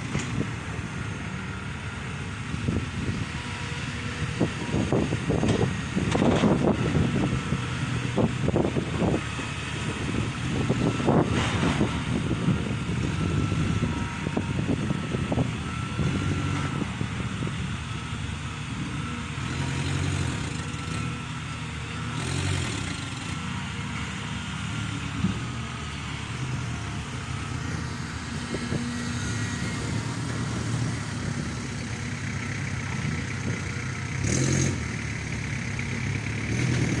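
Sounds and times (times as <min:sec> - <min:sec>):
excavator diesel engine working: 0:00.0 - 0:37.0.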